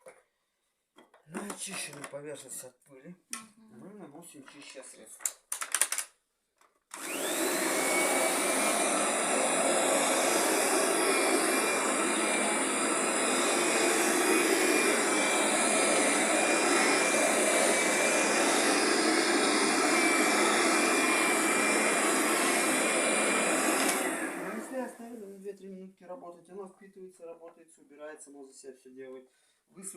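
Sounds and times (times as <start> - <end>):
vacuum cleaner motor whining: 6.9 - 25.0.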